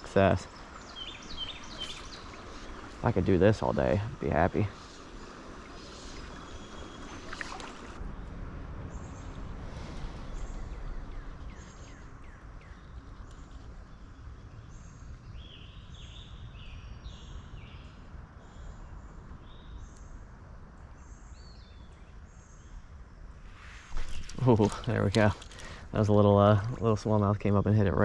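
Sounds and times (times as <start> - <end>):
songbirds chirping: 0.0 - 28.0.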